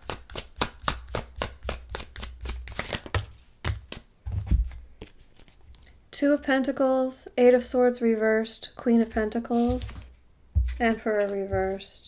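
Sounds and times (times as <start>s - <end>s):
cards being shuffled: 0.0s - 5.7s, 9.5s - 10.1s.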